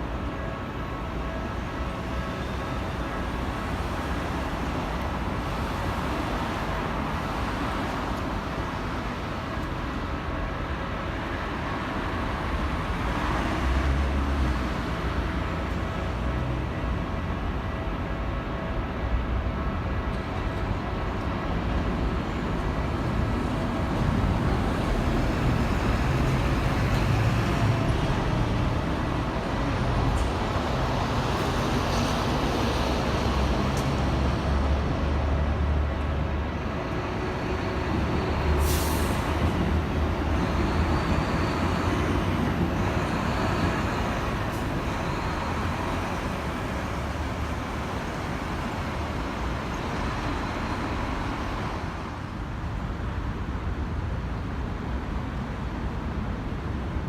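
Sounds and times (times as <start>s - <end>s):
heavy road traffic: 0.0s - 57.0s
air brakes hissing: 38.5s - 39.6s.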